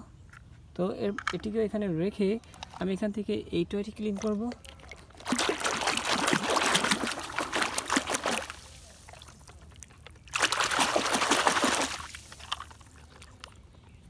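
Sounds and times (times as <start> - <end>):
water splashing and pouring: 4.2 - 13.6.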